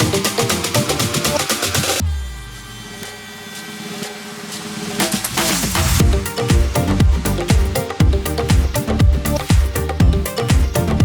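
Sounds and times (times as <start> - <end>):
dance music with kick drum: 0.0 - 2.0, 4.7 - 11.0.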